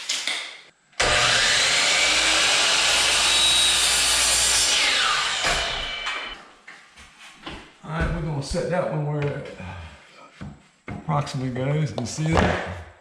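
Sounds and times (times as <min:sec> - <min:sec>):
electric saw cutting wood: 0:01.0 - 0:06.4
saw blade whine spinning down: 0:01.0 - 0:06.4.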